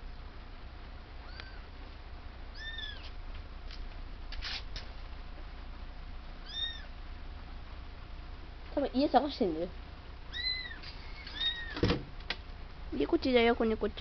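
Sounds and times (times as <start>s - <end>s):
kitten mewing: 1.2s - 1.7s, 2.5s - 3.1s, 6.4s - 6.9s, 10.3s - 11.8s
rustling: 1.4s - 5.2s.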